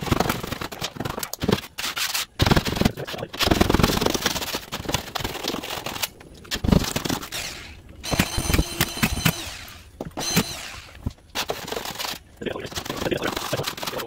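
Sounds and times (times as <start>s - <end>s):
screw gun motor whine: 7.2s - 12.2s.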